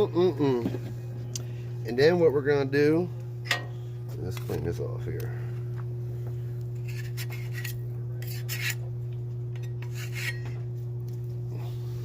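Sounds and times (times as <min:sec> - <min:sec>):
steady low hum: 0:00.0 - 0:12.0
metal scraper scraping griddle: 0:06.8 - 0:08.8, 0:09.6 - 0:10.6.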